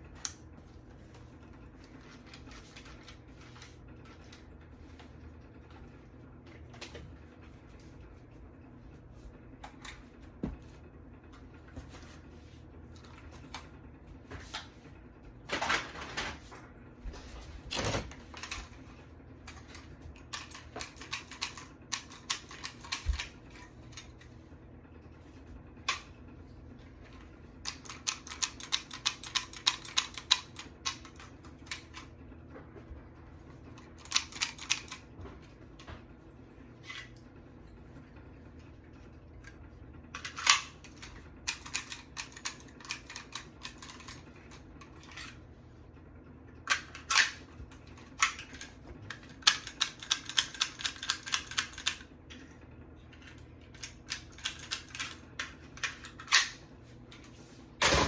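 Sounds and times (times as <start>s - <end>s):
sharp clicks and clattering: 46.7s - 52.5s.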